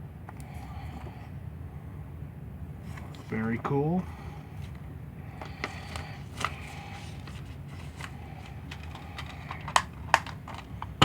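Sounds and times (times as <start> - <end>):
low steady hum: 0.0 - 11.0
disc cases clicking: 5.4 - 11.0
packaging rustling: 5.4 - 11.0.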